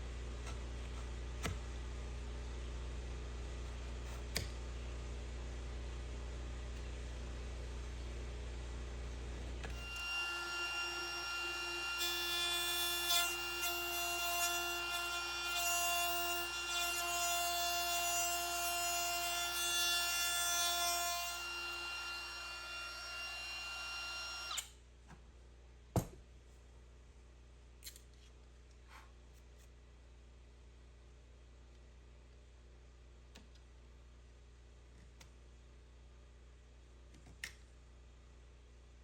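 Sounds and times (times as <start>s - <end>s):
power tool whining: 9.7s - 14.0s, 21.0s - 24.7s.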